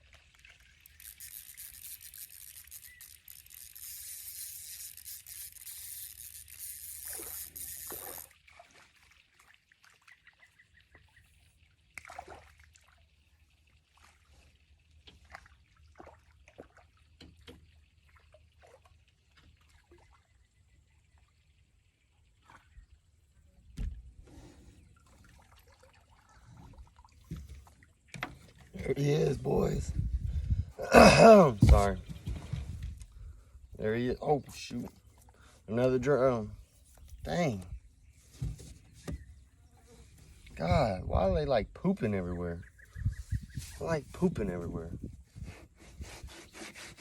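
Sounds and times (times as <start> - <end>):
water trickling and dripping: 0.0 - 24.1, 24.9 - 30.6
small clicks: 0.9 - 8.3
low thump: 23.8 - 24.1.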